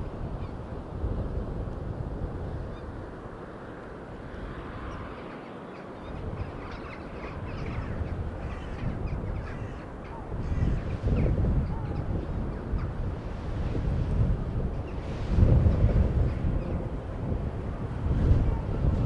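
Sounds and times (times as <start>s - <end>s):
wind buffeting microphone: 0.0s - 19.0s
seabirds calling: 4.7s - 13.1s.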